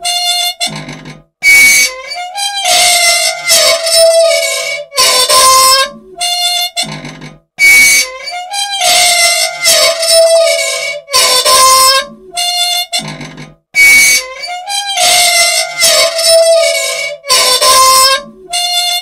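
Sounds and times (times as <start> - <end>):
machine parts squealing: 0.0 - 19.0.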